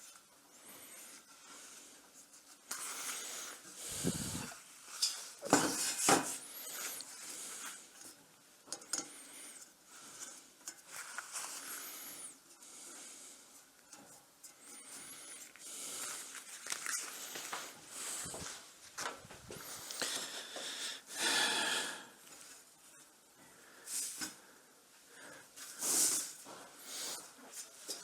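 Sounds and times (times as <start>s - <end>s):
rubbing and rustling: 10.0s - 13.2s.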